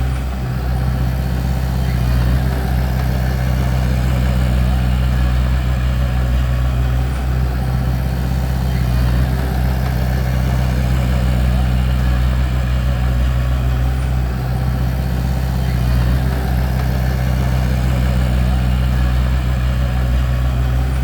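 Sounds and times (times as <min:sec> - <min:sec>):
bulldozer diesel engine droning: 0:00.0 - 0:21.0.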